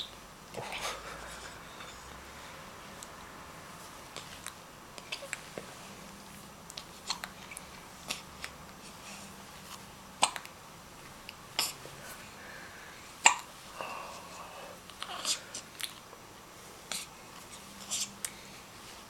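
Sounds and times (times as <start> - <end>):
baby hiccuping: 10.2 - 10.5, 11.6 - 11.8, 13.2 - 13.5.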